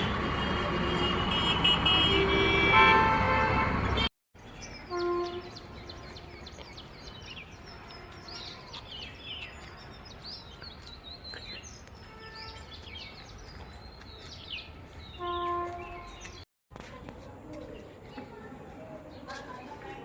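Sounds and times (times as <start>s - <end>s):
vehicle horn honking: 0.0s - 4.1s, 4.9s - 5.6s, 15.2s - 16.2s
traffic rumble: 0.0s - 20.0s
birds chirping: 3.5s - 16.5s.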